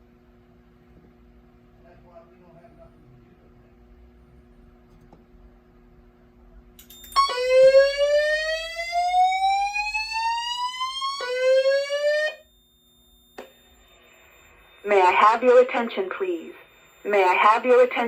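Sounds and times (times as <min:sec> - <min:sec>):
fire alarm whoop tone: 0:07.0 - 0:15.3.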